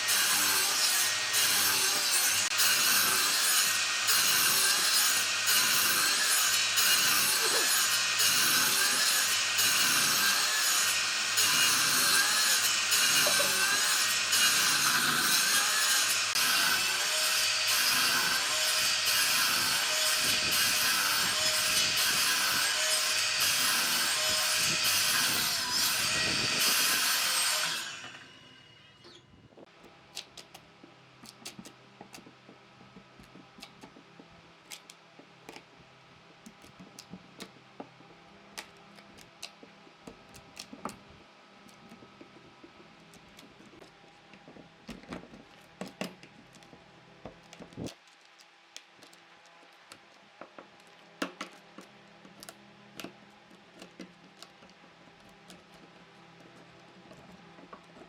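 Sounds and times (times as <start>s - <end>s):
tools and wood clicking: 29.8s - 41.0s, 41.6s - 58.0s.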